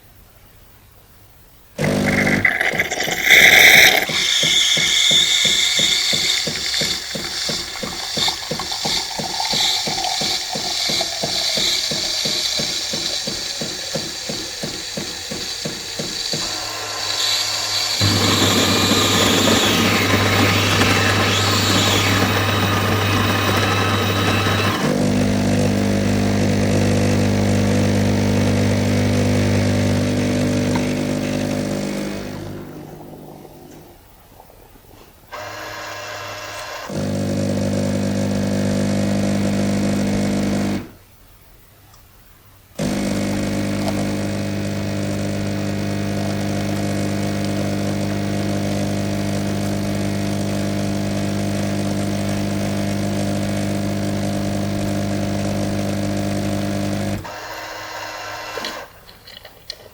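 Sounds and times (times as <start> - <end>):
pump hum with hissing: 1.8 - 41.1, 42.7 - 59.9
coffee machine mechanical rattle: 2.1 - 24.9.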